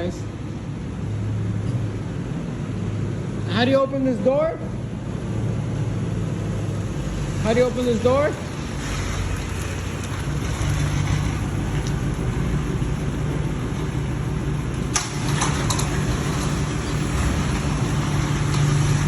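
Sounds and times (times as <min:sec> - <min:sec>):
low mechanical hum: 0:00.0 - 0:19.0
sharp clicks: 0:09.2 - 0:19.0.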